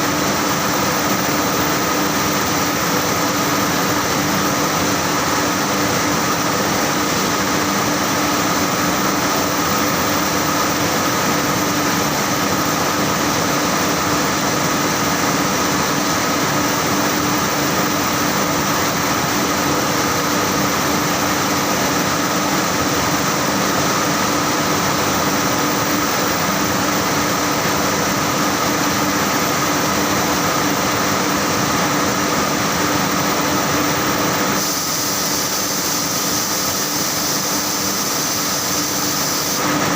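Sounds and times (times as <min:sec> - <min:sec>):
machine whirring and humming: 0:00.0 - 0:39.9.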